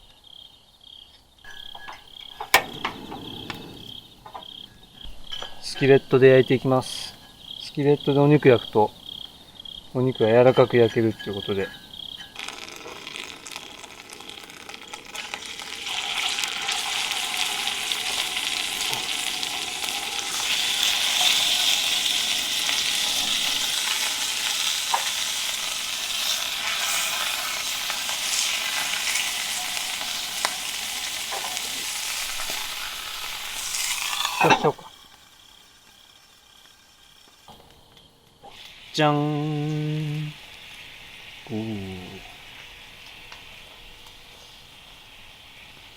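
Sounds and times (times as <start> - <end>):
meat searing in oil: 10.8 - 45.9.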